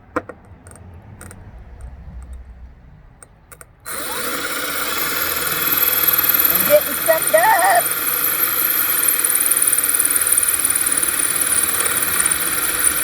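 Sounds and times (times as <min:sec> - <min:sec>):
electric drill boring: 0:03.9 - 0:13.0.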